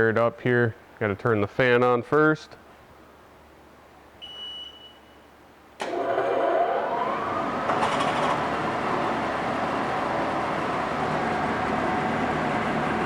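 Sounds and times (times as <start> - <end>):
short electronic beep: 4.2 - 5.3
outboard motor starting and idling: 5.8 - 13.0.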